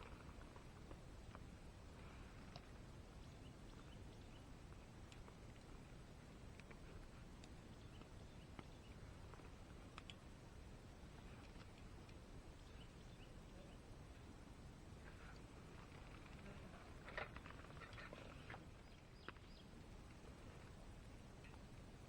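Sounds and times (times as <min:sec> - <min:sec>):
faint light clicks: 0:06.5 - 0:10.2.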